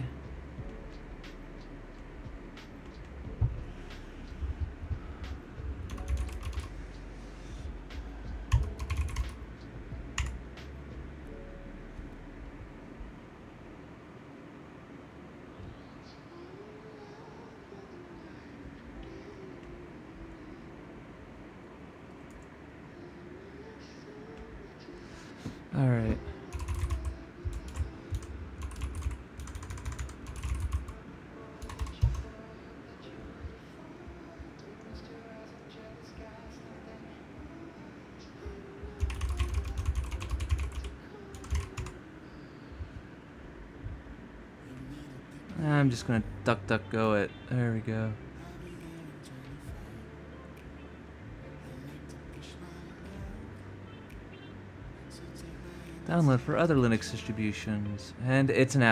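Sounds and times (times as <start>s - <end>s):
typing on computer keyboard: 5.9s - 6.8s, 8.5s - 9.4s, 10.2s - 10.4s, 26.5s - 31.0s, 31.6s - 32.3s, 39.0s - 42.0s.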